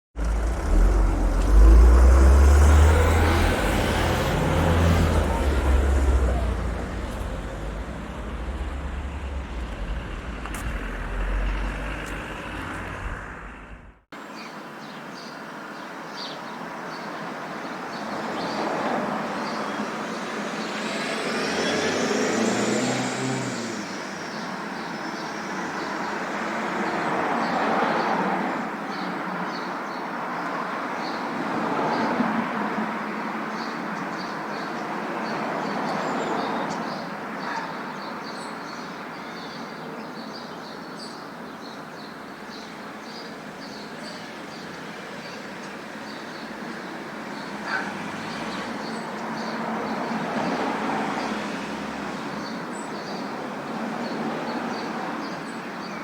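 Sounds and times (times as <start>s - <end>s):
road vehicle noise: 0.1s - 14.3s, 17.5s - 56.0s
bus engine deep rumble: 0.2s - 14.1s
vehicle whine: 0.2s - 14.1s, 19.8s - 24.5s.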